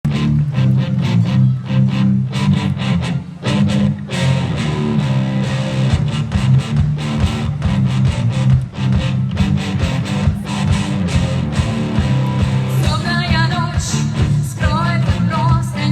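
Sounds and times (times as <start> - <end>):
bass guitar: 0.0 - 15.9
strummed guitar: 0.1 - 15.9
steady drum beat: 5.1 - 15.9.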